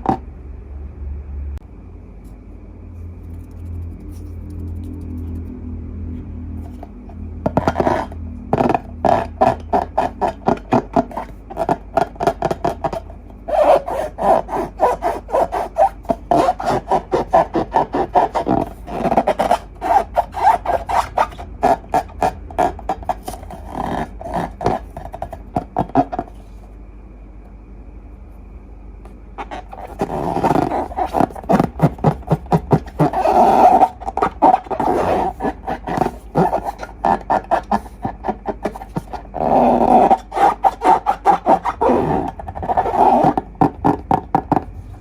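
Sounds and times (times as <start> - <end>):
squeaky scraping of balloons and slime: 6.6 - 26.6, 29.4 - 45.0.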